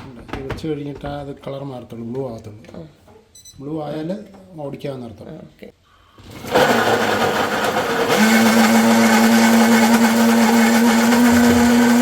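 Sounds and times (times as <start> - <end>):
mixer grinder motor whine: 6.3 - 12.0.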